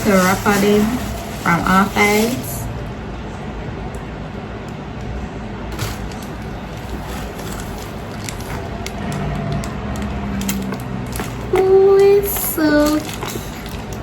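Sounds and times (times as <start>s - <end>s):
gift wrapping tearing: 0.0s - 2.6s, 5.7s - 11.6s.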